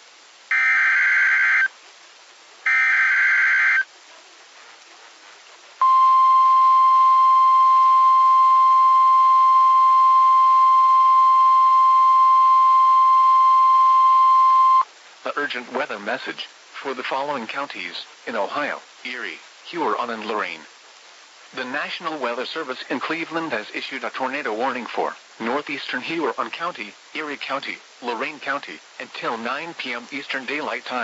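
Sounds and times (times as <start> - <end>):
buzzy digital data bursts: 0.5 - 1.7, 2.6 - 3.9.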